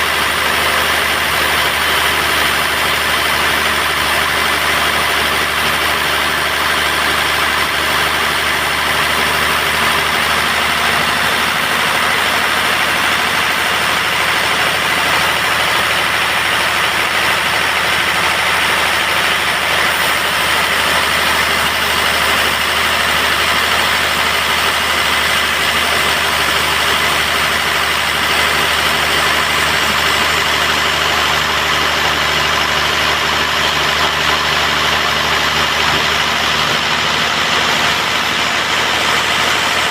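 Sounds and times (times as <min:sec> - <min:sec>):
band sawmill sawing wood: 0:00.0 - 0:39.9.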